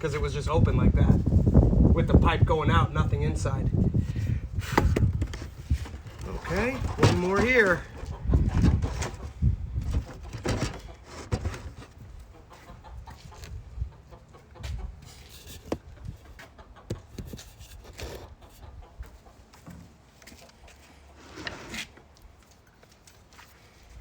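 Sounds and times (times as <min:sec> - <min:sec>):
plastic bucket knocks and clicks: 0:04.7 - 0:07.6
chickens clucking: 0:06.2 - 0:21.2.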